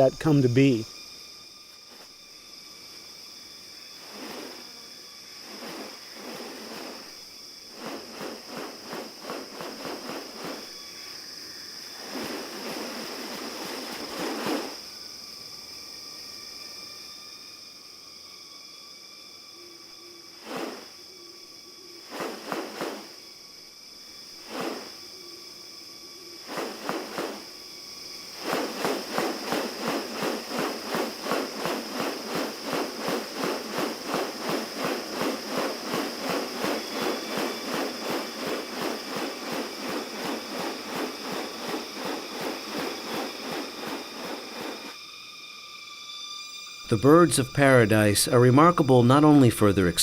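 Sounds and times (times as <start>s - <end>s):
high insect drone: 0.0s - 50.0s
fast even pulsing: 28.3s - 44.9s.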